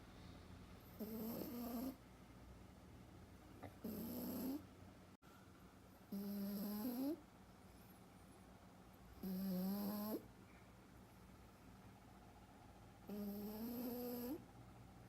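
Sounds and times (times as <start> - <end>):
puppy snoring: 0.8 - 2.0, 3.6 - 4.7, 6.1 - 7.2, 9.2 - 10.3, 13.0 - 14.5.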